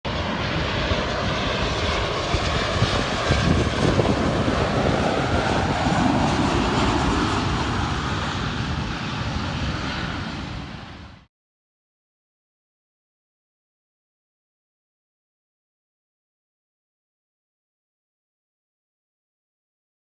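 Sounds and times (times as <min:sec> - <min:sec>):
jet engines at high thrust: 0:00.1 - 0:11.3.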